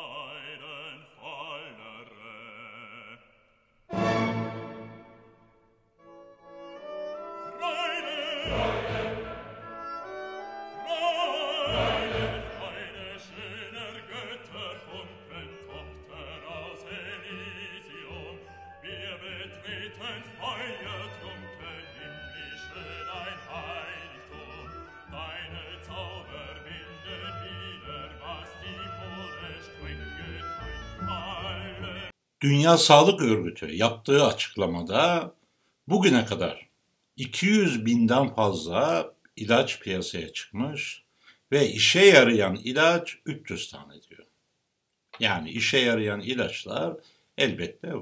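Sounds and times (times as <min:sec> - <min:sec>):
operatic singing with vibrato: 0:00.0 - 0:05.3, 0:06.7 - 0:35.2
classical orchestra: 0:03.9 - 0:05.4, 0:06.0 - 0:32.1.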